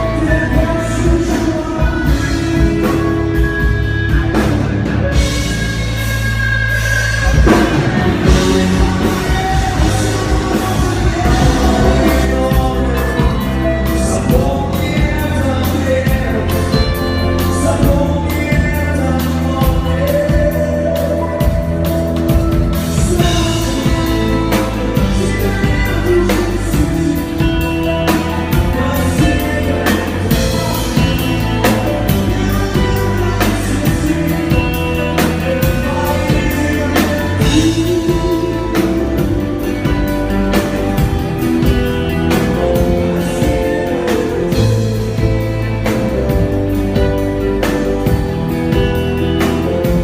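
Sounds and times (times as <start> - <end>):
upbeat pop song with singing: 0.0 - 3.8, 7.2 - 46.6.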